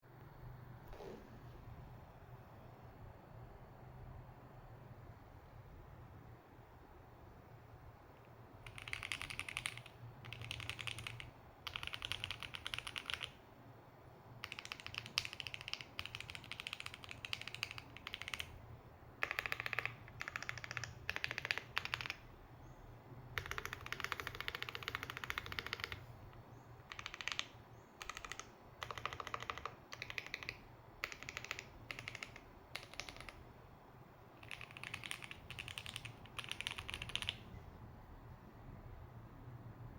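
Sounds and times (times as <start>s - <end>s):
mechanical keyboard typing: 8.6s - 13.4s, 14.4s - 18.6s, 19.2s - 22.3s, 23.4s - 26.1s, 26.8s - 33.4s, 34.4s - 37.5s.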